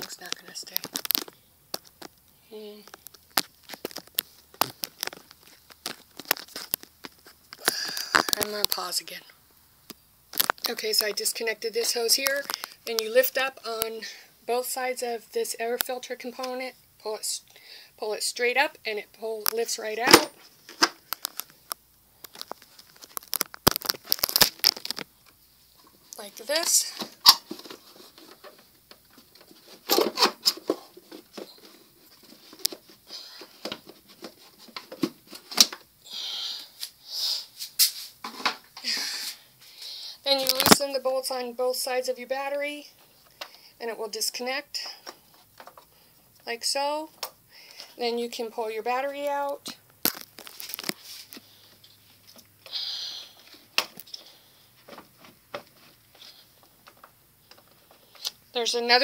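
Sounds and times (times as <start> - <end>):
short hissy rustles: 36.8 - 38.2.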